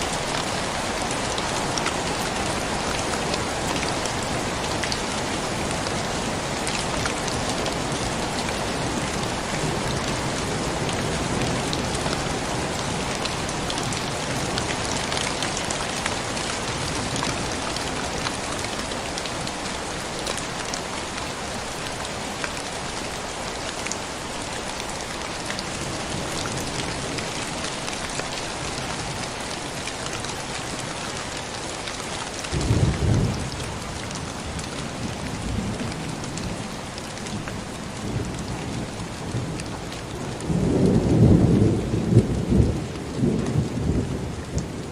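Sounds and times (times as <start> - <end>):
rain falling: 0.0 - 44.9.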